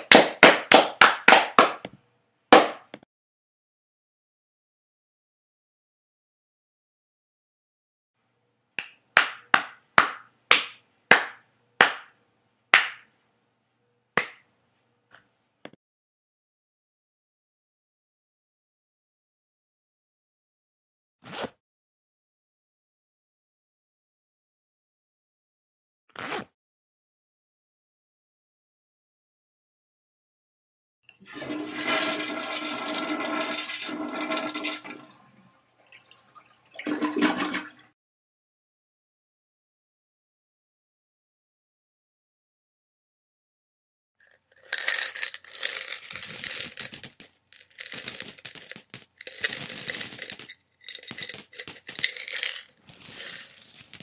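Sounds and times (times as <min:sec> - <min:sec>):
person clapping hands: 0:00.0 - 0:01.9, 0:02.6 - 0:02.8, 0:08.8 - 0:12.1, 0:12.8 - 0:13.1
toilet water rushing: 0:31.2 - 0:37.9.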